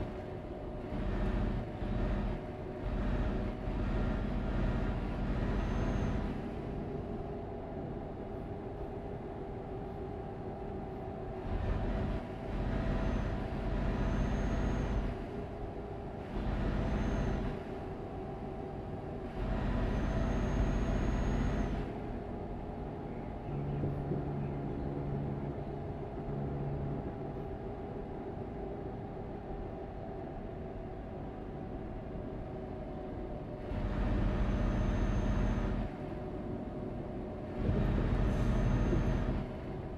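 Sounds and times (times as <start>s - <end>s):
vehicle engine and road noise: 0.0s - 39.9s
faint high whistle: 5.6s - 6.3s, 14.0s - 15.1s, 19.9s - 21.7s, 34.5s - 35.8s, 38.2s - 39.4s.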